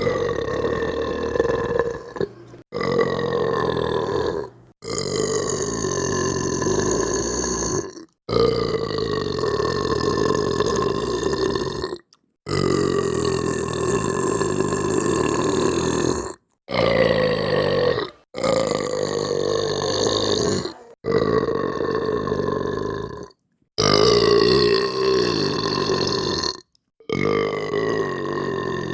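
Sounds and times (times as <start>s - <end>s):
person belching: 0.0s - 28.9s.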